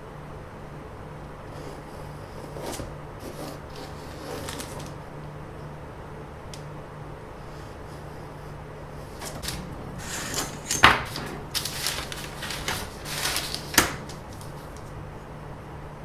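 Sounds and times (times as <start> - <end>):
low steady hum: 0.0 - 16.0
rustling handling noise: 2.4 - 5.1, 9.0 - 15.1.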